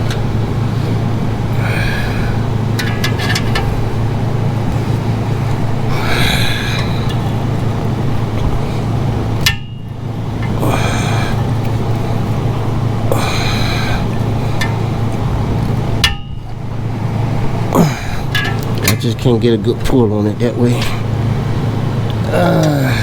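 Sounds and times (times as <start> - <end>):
steady low hum: 0.0 - 23.0
person breathing heavily: 0.6 - 2.7, 5.8 - 7.5, 10.6 - 14.8, 17.8 - 18.4, 22.2 - 23.0.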